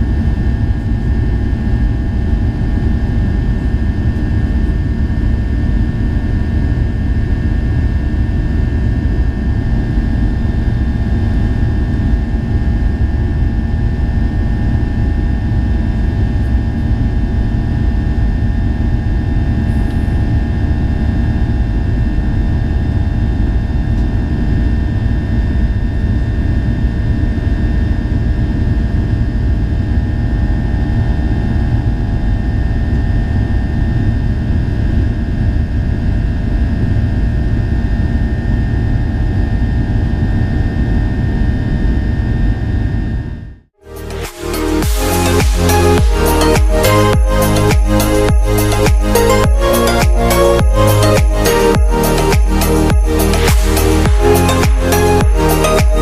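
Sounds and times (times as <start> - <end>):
steady hums: 43.8 - 56.0.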